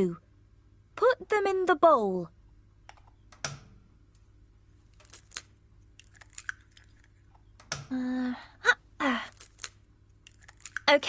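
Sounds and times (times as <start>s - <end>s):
eggs cracking taps and clicks: 4.9s - 7.9s, 9.3s - 11.0s.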